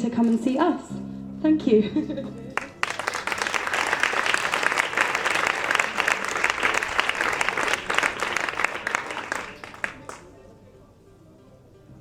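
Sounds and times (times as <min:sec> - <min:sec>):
audience applauding: 0:02.5 - 0:10.3.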